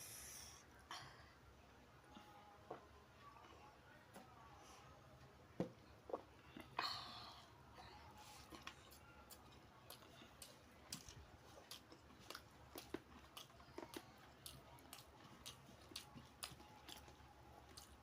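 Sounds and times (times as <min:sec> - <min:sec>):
person chewing with mouth clicks: 0:08.5 - 0:18.0.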